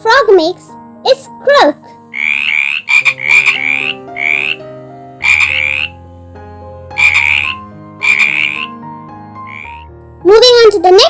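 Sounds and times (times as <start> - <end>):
frog croaking: 2.0 - 9.9.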